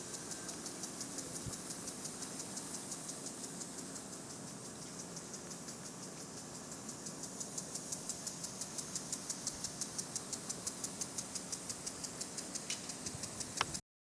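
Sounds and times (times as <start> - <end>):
cicadas singing: 0.0 - 13.8
sharp click: 12.1 - 13.8.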